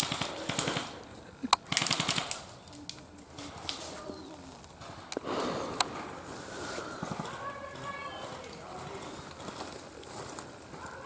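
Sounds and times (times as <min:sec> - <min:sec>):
airsoft guns firing bursts: 0:00.0 - 0:02.6.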